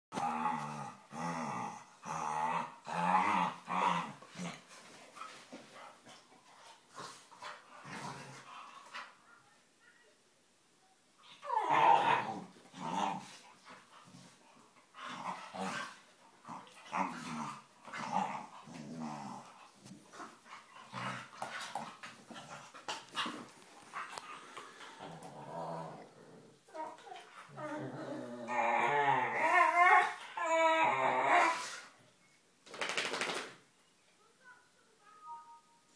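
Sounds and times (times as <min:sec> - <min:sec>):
dogs growling and grumbling: 0:00.1 - 0:04.8, 0:07.0 - 0:09.0, 0:11.2 - 0:31.9.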